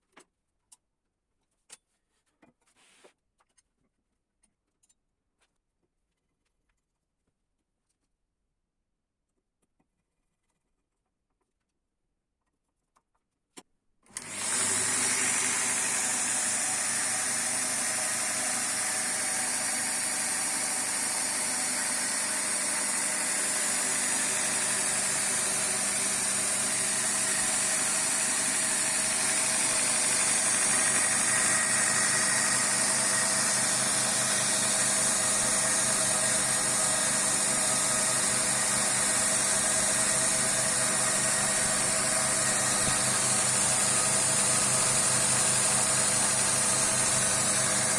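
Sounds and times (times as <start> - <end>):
belt grinder motor hissing: 14.1 - 47.9.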